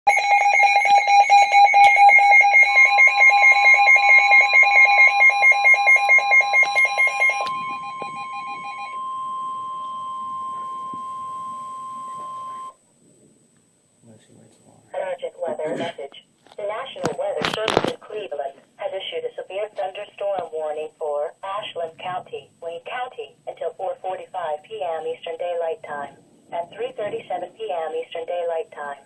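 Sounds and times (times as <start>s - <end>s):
rapidly pulsing alarm beeps: 0.1s - 12.8s
steady warning alarm tone: 0.1s - 12.8s.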